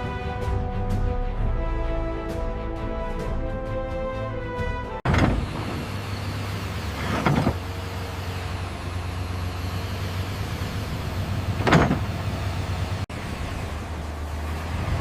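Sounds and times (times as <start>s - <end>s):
heavy vehicle engine running: 5.0s - 15.0s.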